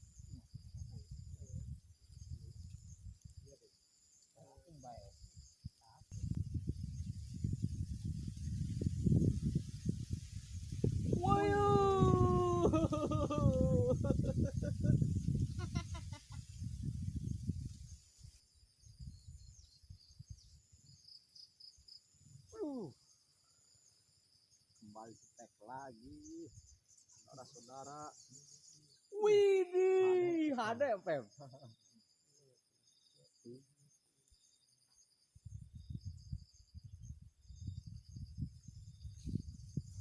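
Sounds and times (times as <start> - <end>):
insects chirping: 0.0 - 40.0
birds chirping: 24.6 - 29.1.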